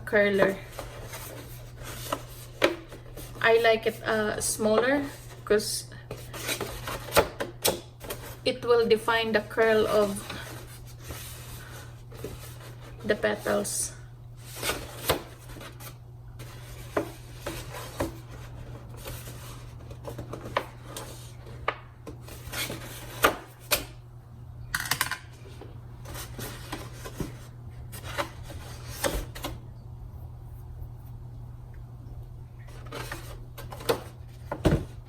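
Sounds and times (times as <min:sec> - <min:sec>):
paper scraping and rustling: 0:00.4 - 0:04.1, 0:09.8 - 0:13.7, 0:14.4 - 0:23.8, 0:26.0 - 0:29.6, 0:32.7 - 0:35.0.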